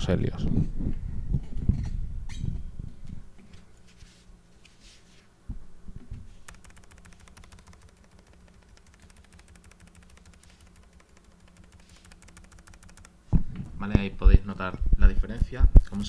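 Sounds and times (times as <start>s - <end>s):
fast keyboard typing: 6.3s - 13.4s.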